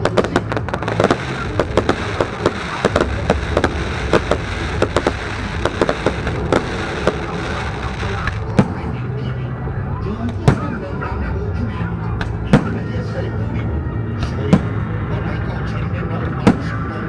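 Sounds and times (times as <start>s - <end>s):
fireworks bangs: 0.0s - 9.0s
steady background noise: 0.0s - 17.0s.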